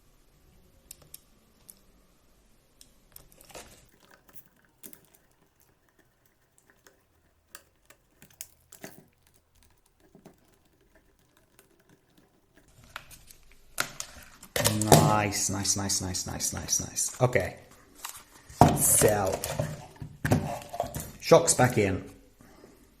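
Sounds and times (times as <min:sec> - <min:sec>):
small plastic parts clicking: 0:02.8 - 0:15.2.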